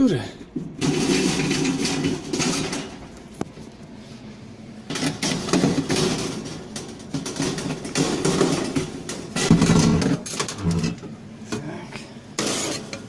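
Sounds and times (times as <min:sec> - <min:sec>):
rattling and scraping: 0:00.5 - 0:03.1.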